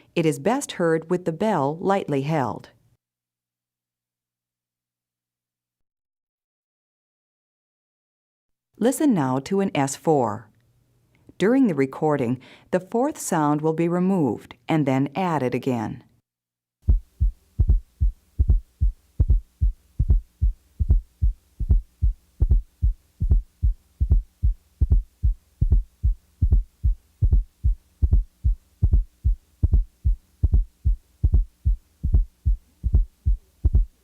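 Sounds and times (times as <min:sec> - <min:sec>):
heart sound thumps: 0:16.8 - 0:34.0
faint steady hum: 0:16.9 - 0:34.0.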